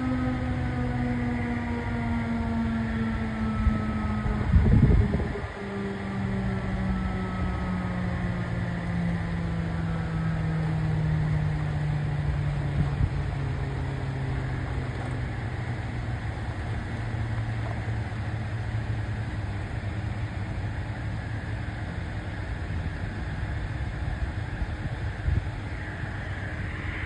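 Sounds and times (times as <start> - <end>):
warning siren winding down: 0.0 - 27.0.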